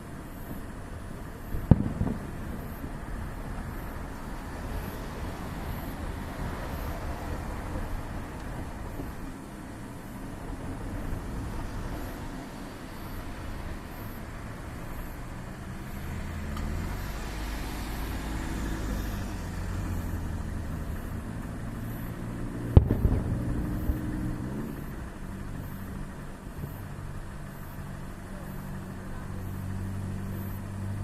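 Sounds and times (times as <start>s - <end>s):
low engine hum: 0.0s - 31.0s
sharp bang: 1.6s - 2.9s, 22.8s - 24.2s
short low rumble: 22.7s - 25.0s.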